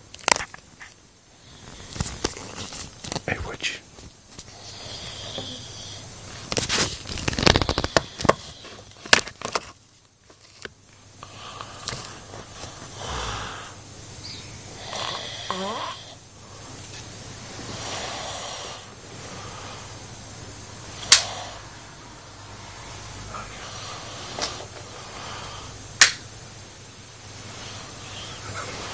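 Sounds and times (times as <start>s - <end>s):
man snoring: 4.5s - 6.1s, 12.9s - 13.8s, 14.7s - 16.2s, 17.6s - 20.0s, 20.8s - 21.9s, 22.8s - 25.8s, 27.5s - 28.9s.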